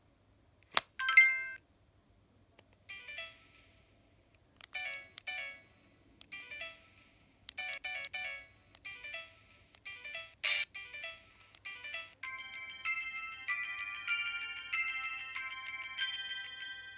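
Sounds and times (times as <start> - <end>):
sharp click: 0.6 - 0.9
phone ringtone chiming melody: 1.0 - 1.6, 2.9 - 16.9.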